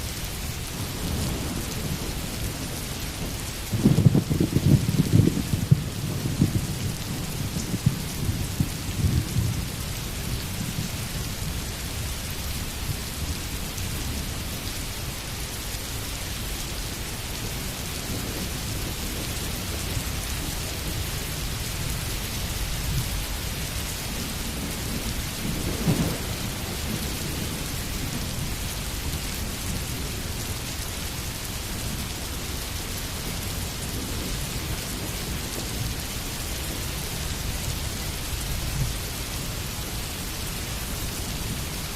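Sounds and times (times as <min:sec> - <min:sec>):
steady rainfall: 0:00.0 - 0:41.9
thunder rumbling: 0:00.7 - 0:12.1, 0:22.5 - 0:30.5.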